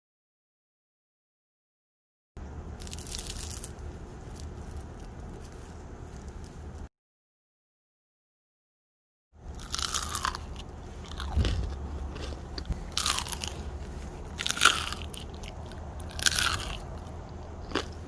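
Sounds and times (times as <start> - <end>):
crunchy bites of fried snack: 2.8 - 6.9, 9.5 - 18.0.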